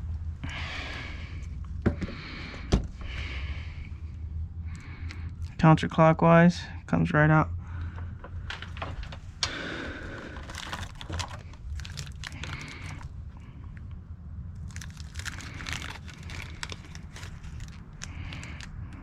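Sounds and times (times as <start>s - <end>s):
low steady hum: 0.0s - 19.0s
crinkling rustles: 7.9s - 13.8s, 14.5s - 19.0s
plastic parts clicking: 10.4s - 13.1s.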